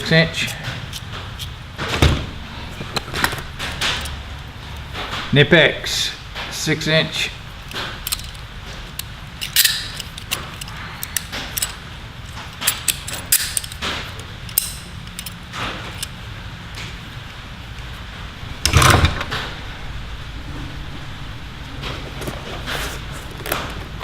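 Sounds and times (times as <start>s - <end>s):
low hum: 1.6s - 6.6s, 14.4s - 24.0s
metal hand tools clinking: 8.0s - 11.8s, 12.5s - 13.8s, 14.5s - 16.1s.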